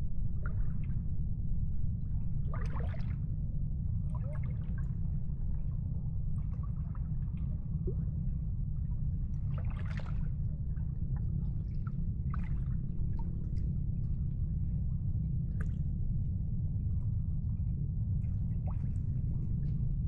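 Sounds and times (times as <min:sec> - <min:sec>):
steady low rumble: 0:00.0 - 0:20.0
water lapping and splashing: 0:02.5 - 0:03.2, 0:09.5 - 0:10.4.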